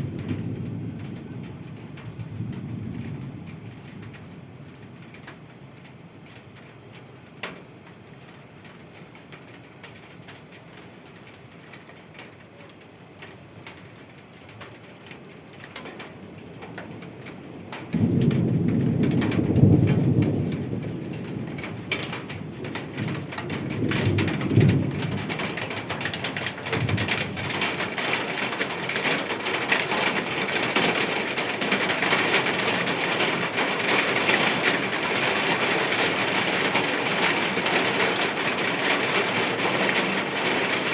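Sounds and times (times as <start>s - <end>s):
thunder rumbling: 0.0s - 5.3s, 16.3s - 40.9s
steady rain falling: 0.0s - 40.9s.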